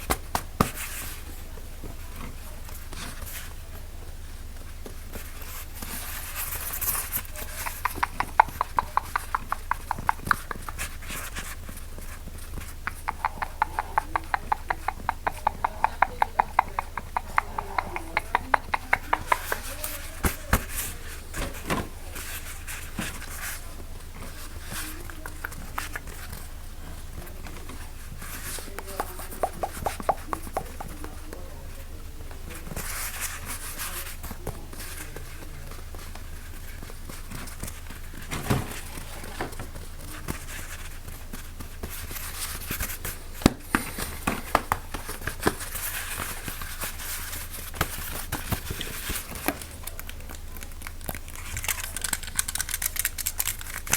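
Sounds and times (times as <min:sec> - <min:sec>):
crinkling: 0:00.0 - 0:53.9
objects tapped at microphone: 0:05.8 - 0:11.7, 0:12.3 - 0:21.9, 0:28.5 - 0:31.4.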